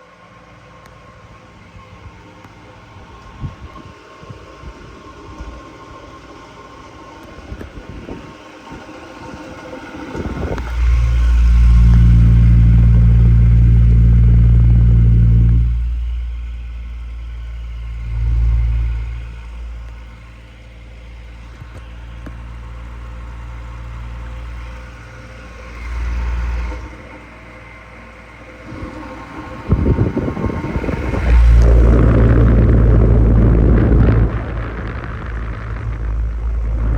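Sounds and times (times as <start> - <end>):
electric fan motor humming: 1.0 - 36.9.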